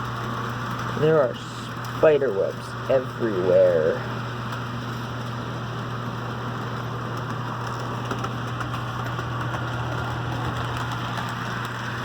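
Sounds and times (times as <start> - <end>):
model train motor hum: 0.0 - 12.0
wheels rushing on track: 0.0 - 12.0.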